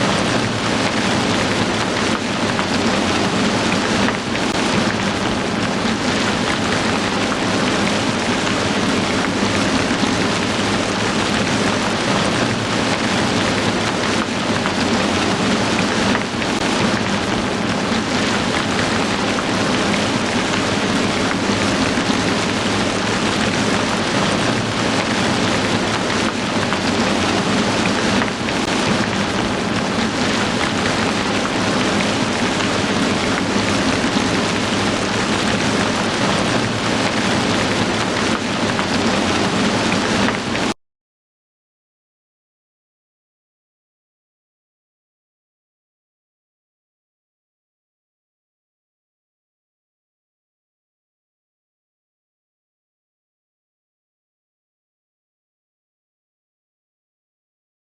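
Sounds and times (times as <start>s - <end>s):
heavy rain falling: 0.0s - 40.8s.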